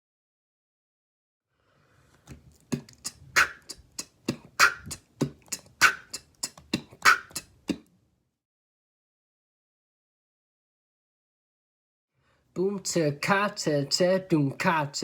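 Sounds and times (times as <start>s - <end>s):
vocal beatbox drum groove: 2.3s - 7.9s.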